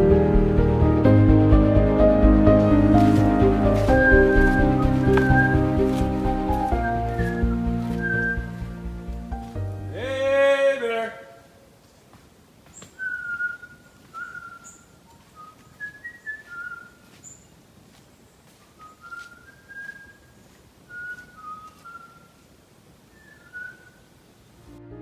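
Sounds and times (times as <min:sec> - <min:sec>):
person whistling a slow tune: 0:03.9 - 0:06.0, 0:06.7 - 0:08.6
faint high bird chirps: 0:12.7 - 0:17.6, 0:18.6 - 0:24.2.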